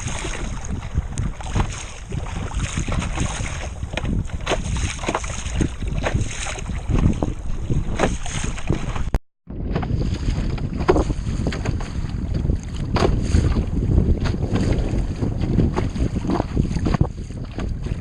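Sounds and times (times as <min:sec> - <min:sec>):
water slapping against hull: 0:00.0 - 0:18.0
wind rumbling on microphone: 0:00.0 - 0:18.0.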